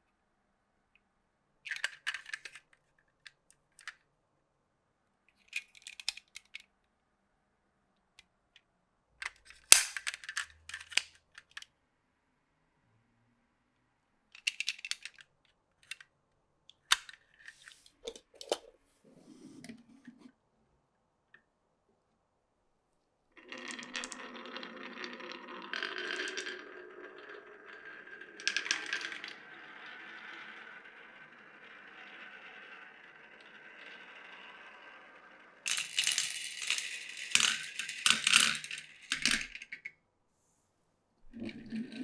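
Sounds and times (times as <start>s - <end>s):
marbles rolling with ringing tone: 23.4s - 39.8s
marbles clacking on wood: 23.4s - 39.9s.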